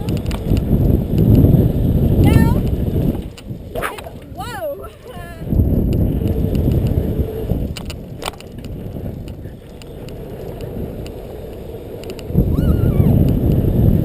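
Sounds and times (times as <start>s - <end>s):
bike tyres crunching on dirt: 5.4s - 14.0s.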